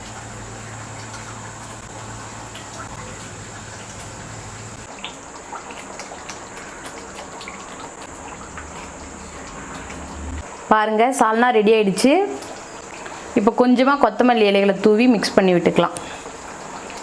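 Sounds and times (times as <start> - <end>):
thick gravy simmering with popping bubbles: 0.7 - 10.2.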